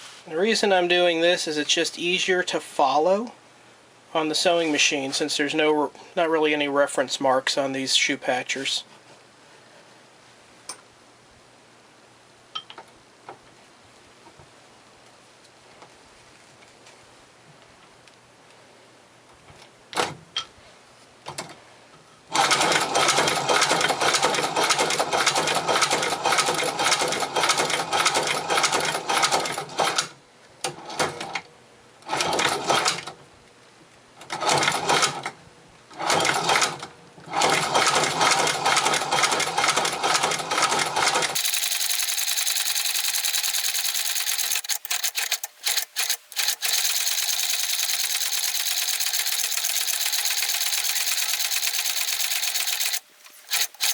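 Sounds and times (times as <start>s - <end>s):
steady hiss: 0.0s - 2.4s
sewing machine needle clatter: 41.2s - 53.9s.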